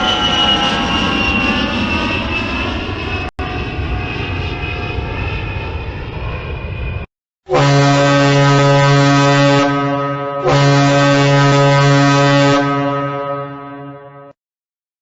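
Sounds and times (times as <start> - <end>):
ship's horn blasts: 7.5 - 14.4.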